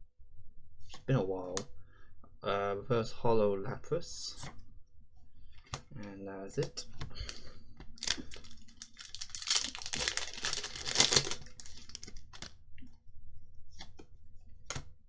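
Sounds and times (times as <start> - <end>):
foil wrapper crinkling: 8.0 - 12.6.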